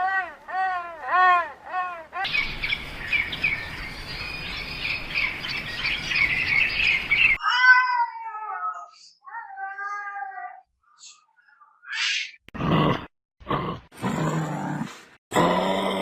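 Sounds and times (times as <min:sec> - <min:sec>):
chorus of high-pitched chirps: 0:02.2 - 0:09.6, 0:10.8 - 0:12.4
cat meowing: 0:07.4 - 0:10.4.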